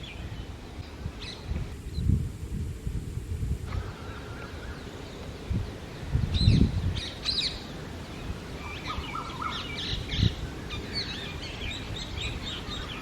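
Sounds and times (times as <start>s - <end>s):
birds chirping: 3.7s - 13.0s.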